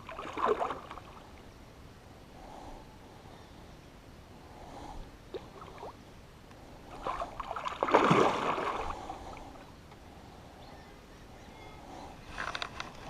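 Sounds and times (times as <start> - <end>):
water splashing: 0.0 - 1.3, 6.9 - 9.3.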